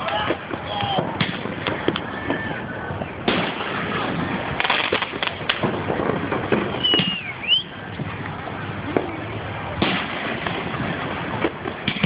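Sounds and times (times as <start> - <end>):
fireworks popping and banging: 0.0 - 12.0
firework whistle: 6.6 - 7.8.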